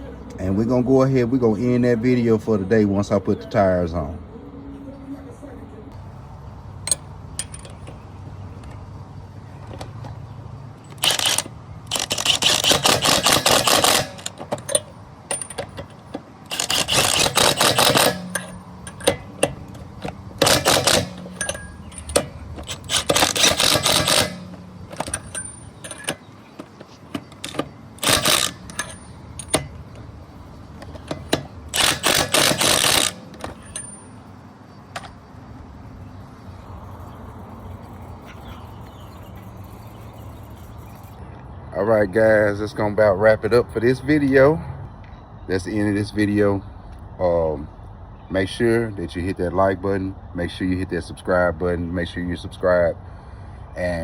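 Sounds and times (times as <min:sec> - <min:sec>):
sharp metallic clicks: 0:06.8 - 0:35.6
impact wrench hammering: 0:06.9 - 0:08.1, 0:10.8 - 0:34.3.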